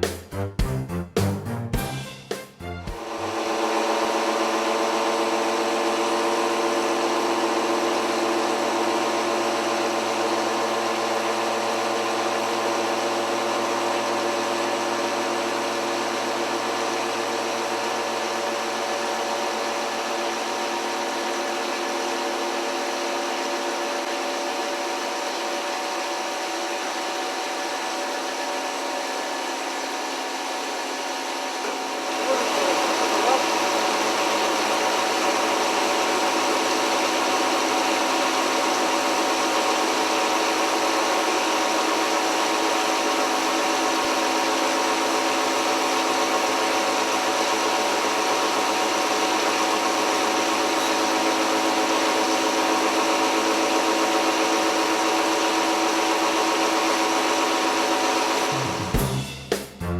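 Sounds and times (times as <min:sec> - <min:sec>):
machine whine: 0:02.6 - 0:10.6, 0:26.7 - 0:54.7.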